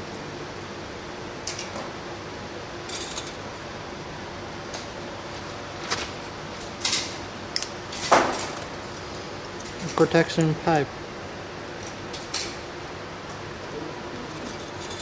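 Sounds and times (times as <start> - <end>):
hand tools clicking and scraping: 14.3 - 15.0.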